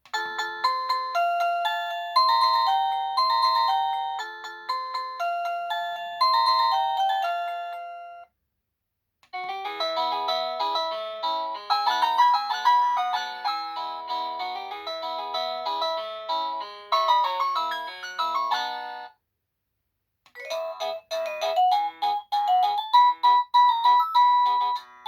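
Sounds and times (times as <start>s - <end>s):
electronic doorbell chime melody: 0.2s - 8.3s.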